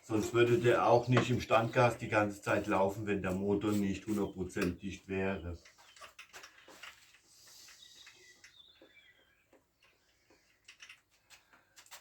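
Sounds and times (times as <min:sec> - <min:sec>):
faint bird chirps: 0:05.6 - 0:10.6.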